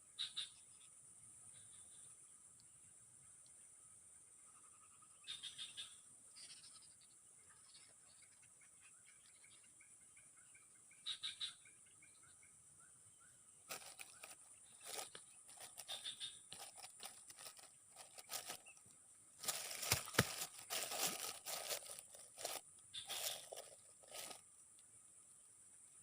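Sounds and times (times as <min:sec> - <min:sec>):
rustling and crinkling handling: 0:13.7 - 0:24.4.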